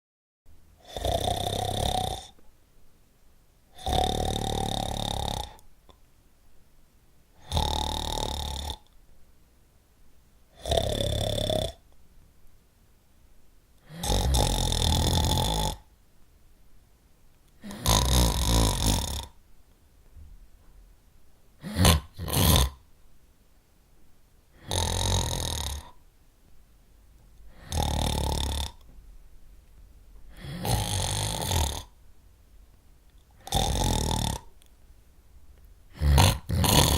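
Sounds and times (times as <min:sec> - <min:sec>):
person snoring loudly: 0:00.8 - 0:02.4, 0:03.7 - 0:05.6, 0:07.4 - 0:08.9, 0:10.5 - 0:11.8, 0:13.8 - 0:15.9, 0:17.6 - 0:19.4, 0:21.6 - 0:22.8, 0:24.6 - 0:26.0, 0:27.5 - 0:28.8, 0:30.3 - 0:32.0, 0:33.4 - 0:34.6, 0:35.9 - 0:36.9.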